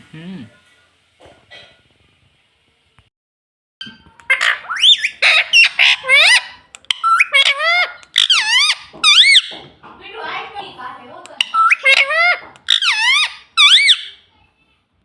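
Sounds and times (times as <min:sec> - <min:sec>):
parakeet squawking: 0:04.2 - 0:09.6, 0:11.2 - 0:14.2.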